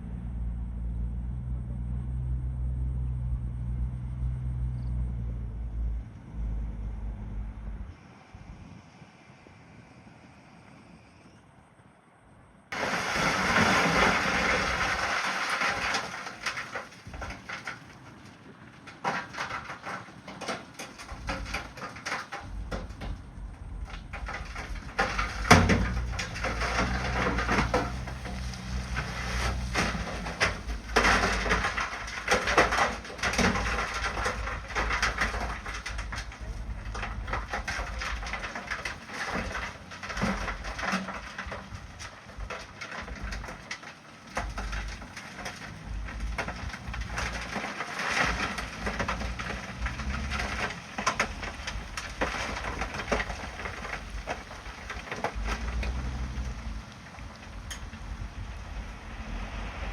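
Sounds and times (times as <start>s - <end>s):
bulldozer engine rumble: 0.0s - 59.9s
steel tracks clattering on rock: 18.8s - 58.2s.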